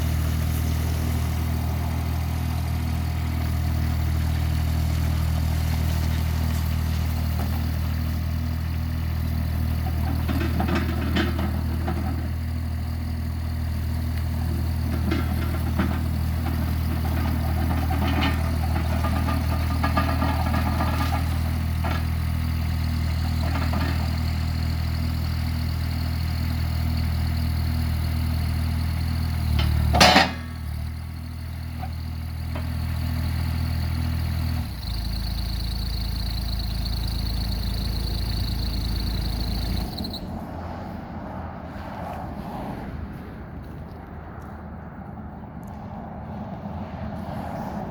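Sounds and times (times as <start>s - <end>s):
engine idling: 0.0s - 41.0s
rattles and clanks: 9.8s - 12.5s, 14.8s - 22.2s, 29.6s - 30.6s.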